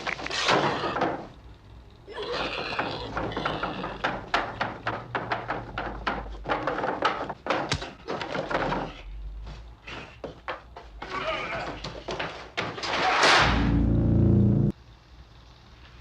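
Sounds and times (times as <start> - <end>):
sharp knocks thuds and clatter: 0.0 - 1.4, 2.7 - 13.7.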